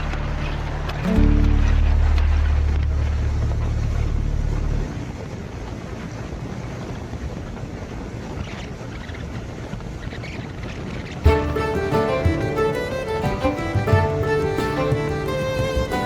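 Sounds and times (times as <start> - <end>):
low vehicle rumble: 0.0 - 6.5
faint steady hiss: 11.2 - 16.0.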